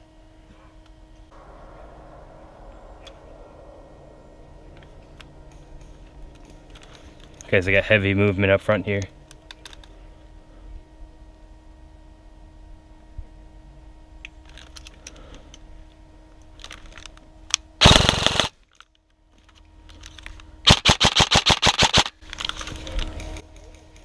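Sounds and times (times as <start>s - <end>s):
airsoft gun firing: 17.8s - 18.5s, 20.7s - 22.2s.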